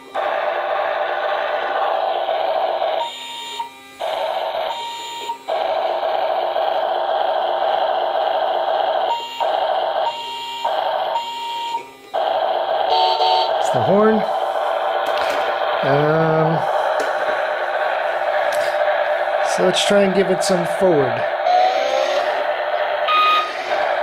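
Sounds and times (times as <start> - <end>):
tinny buzzy toy sound effects: 12.8 - 24.0.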